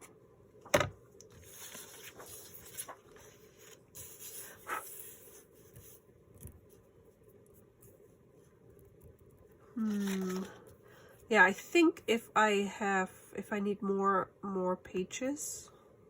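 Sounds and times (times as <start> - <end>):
paper rustling and sliding: 1.3 - 6.0.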